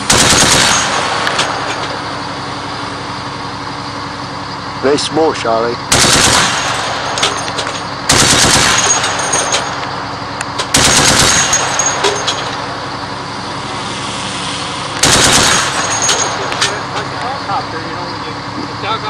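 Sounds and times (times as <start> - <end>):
machine-gun fire: 0.0 - 2.1, 5.9 - 9.7, 10.6 - 12.5, 15.0 - 17.0
drone rotors humming: 0.0 - 19.0.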